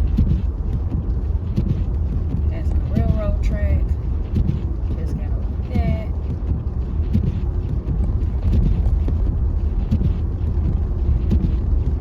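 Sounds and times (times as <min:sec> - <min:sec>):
tyre and road rumble: 0:00.0 - 0:12.0.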